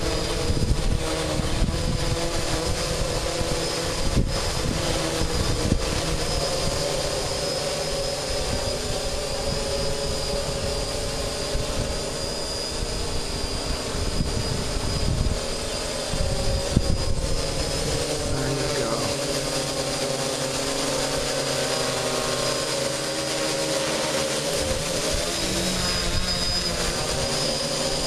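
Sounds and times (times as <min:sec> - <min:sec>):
wind gusts on microphone: 0:00.0 - 0:07.3, 0:08.4 - 0:19.9
drone propellers humming: 0:00.0 - 0:28.0.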